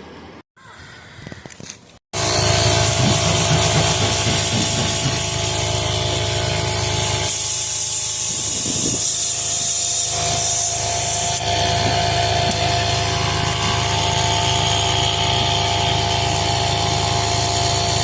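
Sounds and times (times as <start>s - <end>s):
motor humming: 2.2s - 18.0s
loud air hiss: 6.8s - 11.9s.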